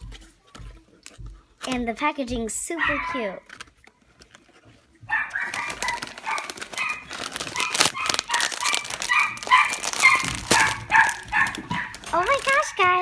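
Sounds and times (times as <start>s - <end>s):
small dog yapping: 2.8s - 3.3s, 5.1s - 12.2s
plastic wrapper crinkling and tearing: 3.4s - 13.0s.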